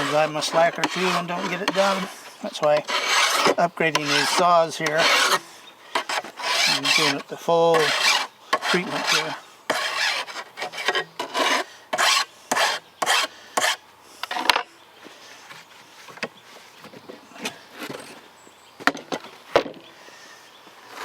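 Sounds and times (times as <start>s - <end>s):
file rasping on steel: 0.0s - 5.4s, 6.0s - 13.8s.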